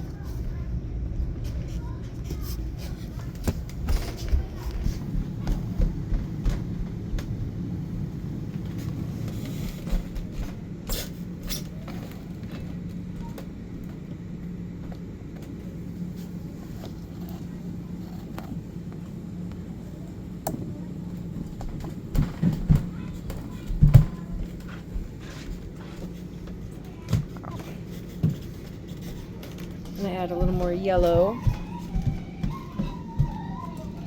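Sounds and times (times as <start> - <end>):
steady low hum: 0.0 - 34.0
children running on floor upstairs: 1.4 - 10.8, 20.8 - 34.0.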